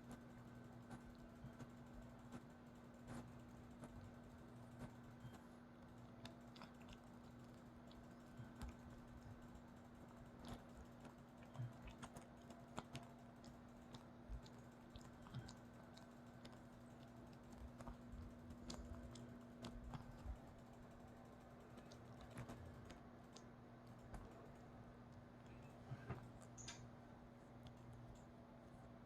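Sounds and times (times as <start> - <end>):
steady low hum: 0.0 - 29.0
light clicks and taps: 10.4 - 26.9.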